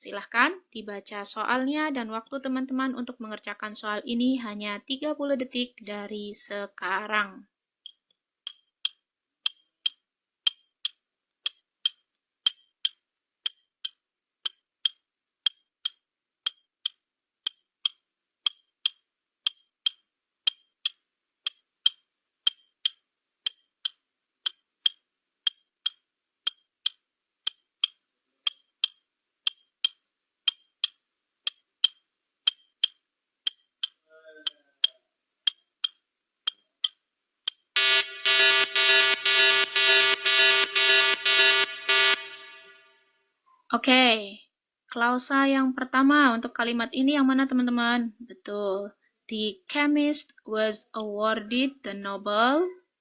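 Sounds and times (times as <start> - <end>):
clock ticking: 7.9 - 42.7.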